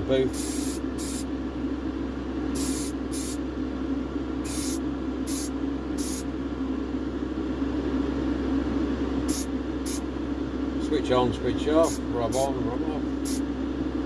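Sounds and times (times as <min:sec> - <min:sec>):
spray can hissing bursts: 0:00.4 - 0:01.2, 0:02.6 - 0:03.4, 0:04.5 - 0:06.2, 0:09.3 - 0:10.0.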